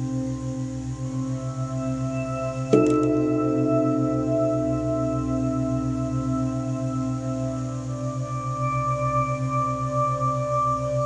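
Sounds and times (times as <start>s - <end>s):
singing bowls ringing: 1.1s - 11.0s
wavering low hum: 2.7s - 8.8s.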